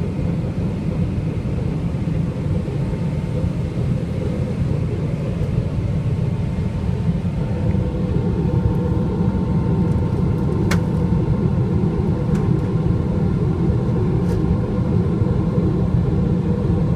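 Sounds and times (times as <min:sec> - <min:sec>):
jet engines rumbling: 0:00.0 - 0:16.9.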